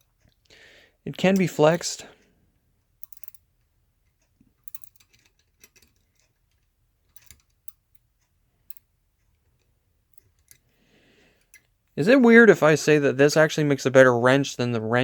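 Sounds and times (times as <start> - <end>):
ratchet wrench clicking: 3.0 - 3.4, 4.6 - 5.8.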